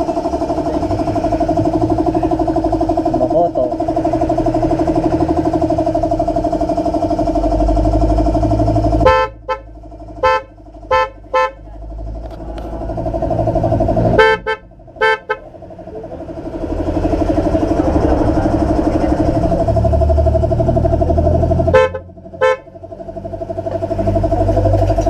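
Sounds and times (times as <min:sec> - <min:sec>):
low fluttering horn tone: 0:00.0 - 0:25.0
high-pitched horn toots: 0:09.0 - 0:11.7, 0:13.3 - 0:15.6, 0:21.3 - 0:22.7.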